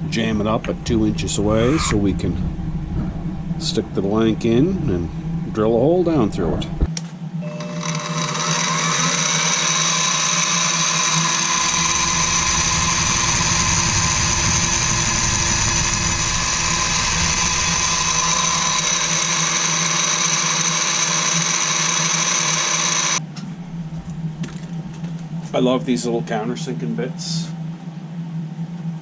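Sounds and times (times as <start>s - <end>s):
drill press boring wood: 7.6s - 23.2s.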